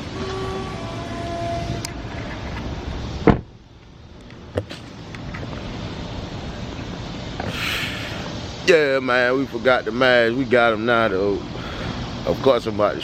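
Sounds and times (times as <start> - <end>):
car door shutting: 3.2 - 3.5, 4.5 - 5.6.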